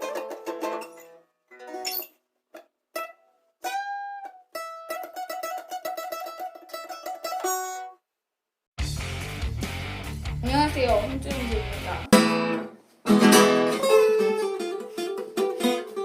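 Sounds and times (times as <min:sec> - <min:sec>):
solo guitar playing: 0:00.0 - 0:01.8, 0:08.8 - 0:16.0.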